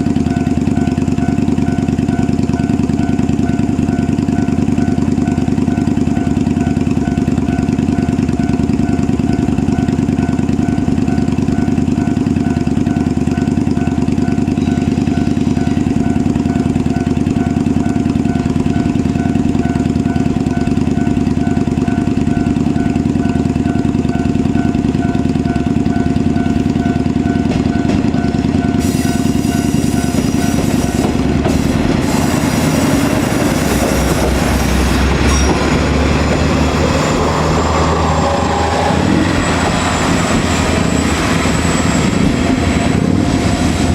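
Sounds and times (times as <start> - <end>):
diesel railcar engine idling: 0.0 - 43.9
level crossing alarm ringing: 0.0 - 43.9.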